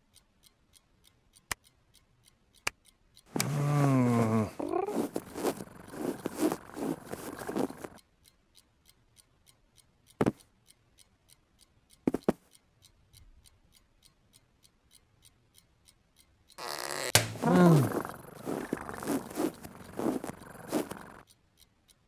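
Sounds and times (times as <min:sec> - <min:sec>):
clock ticking: 0:00.0 - 0:22.0
sharp knock: 0:17.2 - 0:17.4.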